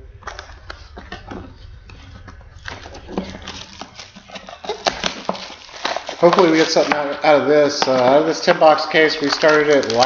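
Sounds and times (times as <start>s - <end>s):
card packs clicking and crinkling: 2.6s - 10.0s.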